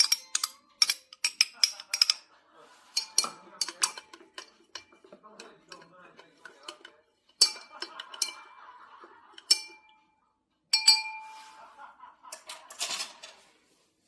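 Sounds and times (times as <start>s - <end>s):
glassware clinking: 0.0s - 2.3s, 2.9s - 11.6s.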